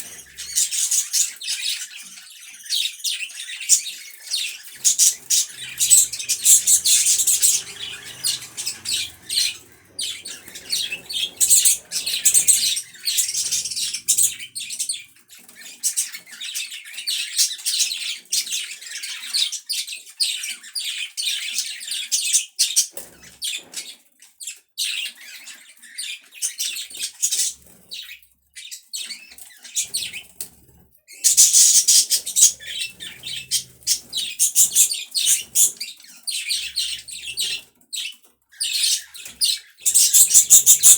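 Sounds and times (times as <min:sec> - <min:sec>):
budgerigars chirping: 0:00.0 - 0:01.9, 0:03.2 - 0:16.5, 0:31.2 - 0:35.8, 0:38.6 - 0:40.9
squawky bird calls: 0:04.8 - 0:15.0, 0:39.9 - 0:40.9.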